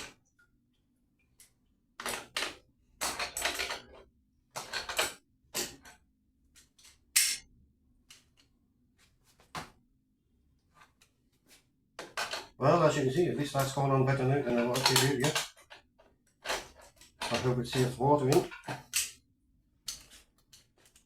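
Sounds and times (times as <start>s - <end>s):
tools clicking and scraping on metal: 1.4s - 7.5s, 13.4s - 19.2s, 19.8s - 21.0s.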